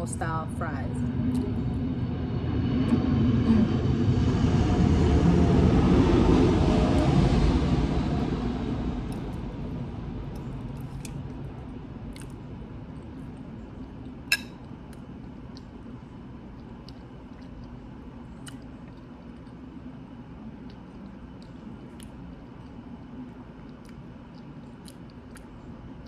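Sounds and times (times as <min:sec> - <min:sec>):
loud low rumble: 0:00.0 - 0:13.8
quiet chewing: 0:09.1 - 0:26.0
mouth and utensil clicks: 0:14.3 - 0:14.6.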